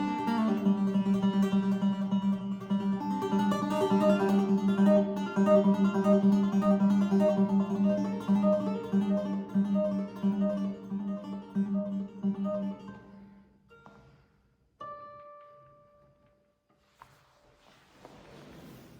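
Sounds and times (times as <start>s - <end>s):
plucked string instrument: 0.0s - 16.4s.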